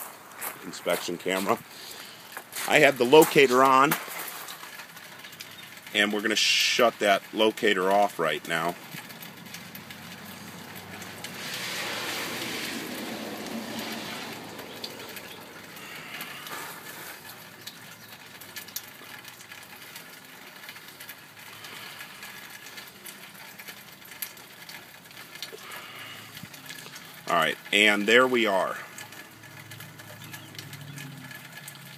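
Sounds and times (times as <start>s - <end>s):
rain hissing: 0.0s - 31.9s
rush of noise: 11.1s - 16.8s.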